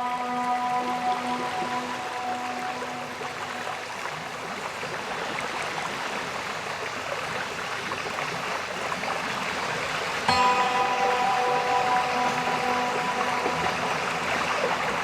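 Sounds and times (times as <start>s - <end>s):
sustained background music: 0.0s - 4.1s, 10.3s - 15.0s
waterfall rushing: 0.0s - 5.2s, 10.3s - 15.0s.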